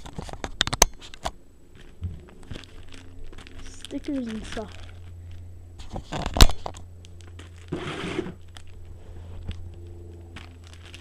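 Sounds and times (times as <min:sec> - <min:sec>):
paper or plastic rustle: 0:00.0 - 0:11.0.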